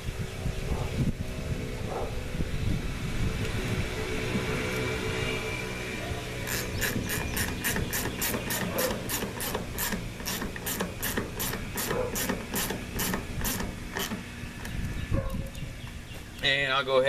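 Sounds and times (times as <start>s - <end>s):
hand ratchet tool clicking: 6.5s - 14.2s.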